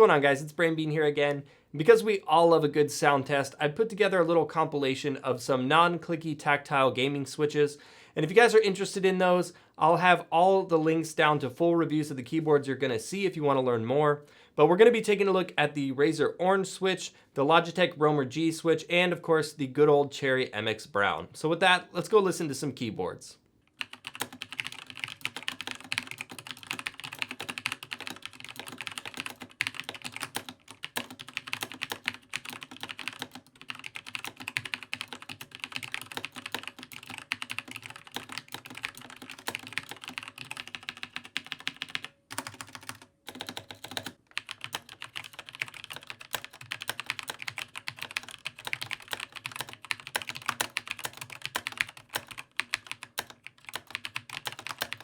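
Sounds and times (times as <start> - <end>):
fast typing on mechanical keyboard: 23.8 - 55.0.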